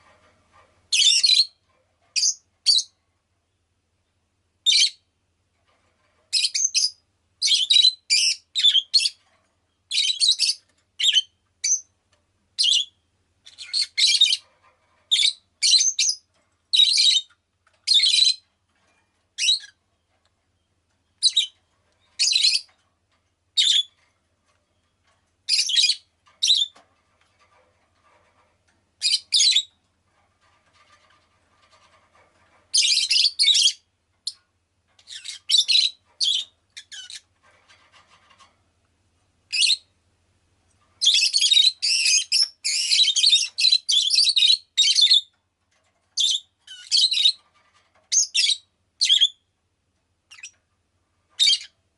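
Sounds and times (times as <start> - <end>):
lovebird shrill chirps: 41.0 - 45.2.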